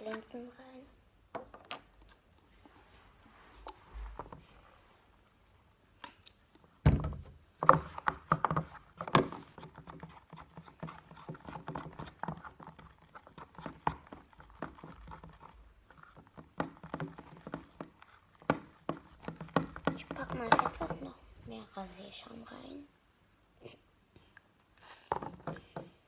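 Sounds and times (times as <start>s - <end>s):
stick knocking in plastic box: 16.0s - 21.1s.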